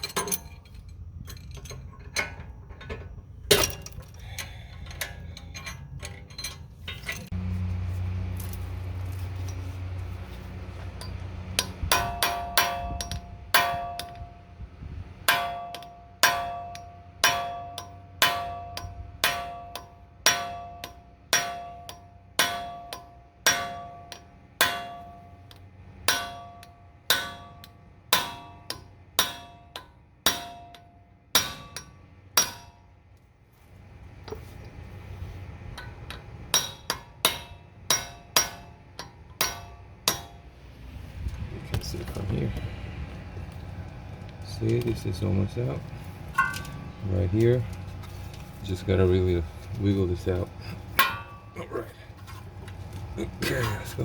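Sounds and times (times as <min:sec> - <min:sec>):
low hum: 0:00.0 - 0:54.0
hammer striking metal tool: 0:11.0 - 0:14.3, 0:15.3 - 0:32.8, 0:35.8 - 0:40.5, 0:46.3 - 0:47.0, 0:51.0 - 0:51.6.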